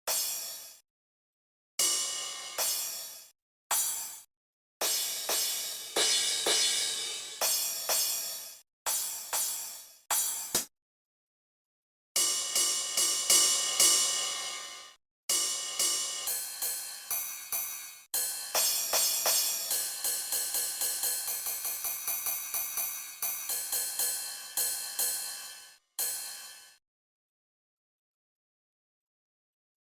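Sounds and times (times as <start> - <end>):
drum machine cymbal and hi-hat hits: 0.1 - 0.8, 1.8 - 4.2, 4.8 - 10.7, 12.2 - 26.8.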